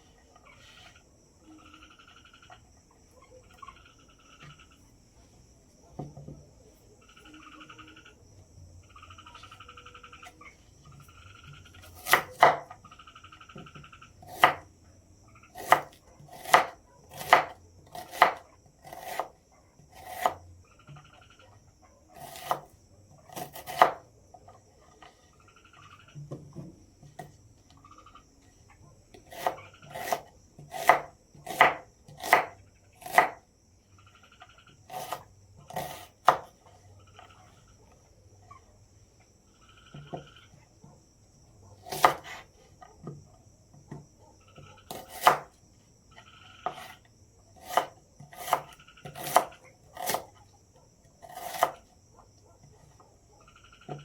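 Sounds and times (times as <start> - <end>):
insect drone: 0.0 - 54.0
knife chopping: 11.9 - 12.7, 14.3 - 14.6, 15.6 - 19.3, 19.9 - 20.4, 22.2 - 22.7, 23.3 - 24.0, 29.1 - 33.4, 34.9 - 36.5, 41.8 - 42.4, 44.9 - 45.5, 47.6 - 50.3, 51.2 - 51.8.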